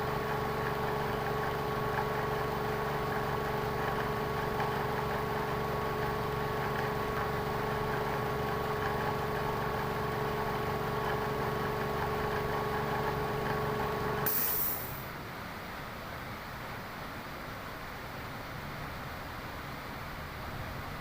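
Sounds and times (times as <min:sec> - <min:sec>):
car engine idling: 0:00.0 - 0:14.2
short hiss: 0:14.3 - 0:15.1.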